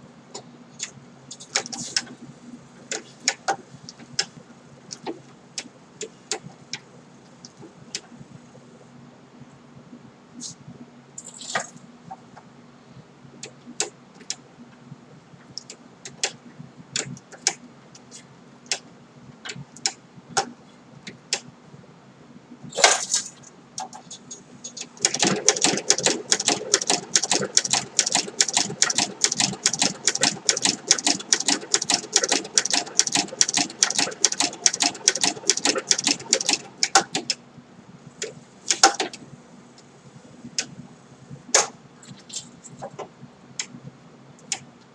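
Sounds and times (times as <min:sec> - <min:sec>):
sewing machine clicking stitches: 0:24.7 - 0:37.4, 0:38.7 - 0:39.1.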